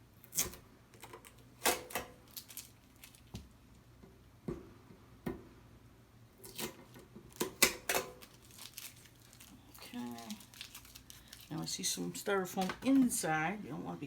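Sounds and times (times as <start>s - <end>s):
packing tape ripping off: 0.2s - 3.3s, 6.4s - 11.7s.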